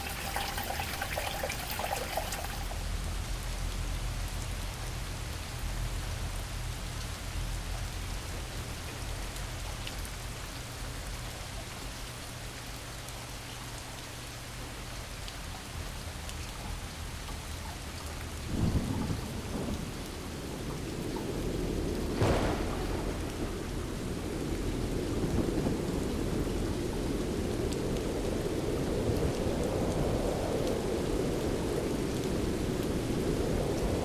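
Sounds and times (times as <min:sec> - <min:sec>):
thunder rumbling: 0:00.0 - 0:02.9, 0:18.2 - 0:34.0
heavy rain: 0:00.0 - 0:34.0.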